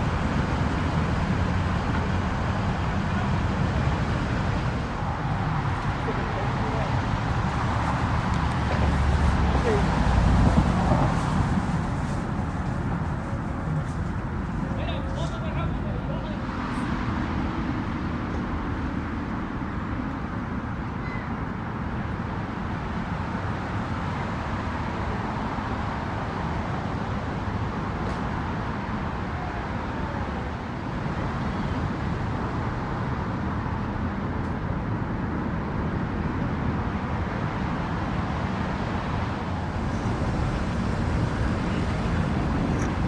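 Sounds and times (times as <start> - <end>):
motor engine rumble: 0.0 - 16.4, 39.5 - 43.0
outdoor background noise: 0.0 - 43.0.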